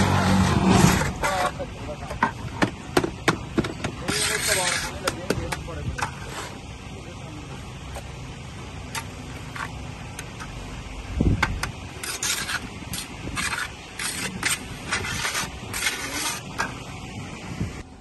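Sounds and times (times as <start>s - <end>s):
scraping strokes: 0.0s - 1.7s, 4.0s - 5.2s, 6.0s - 6.6s, 12.0s - 16.8s.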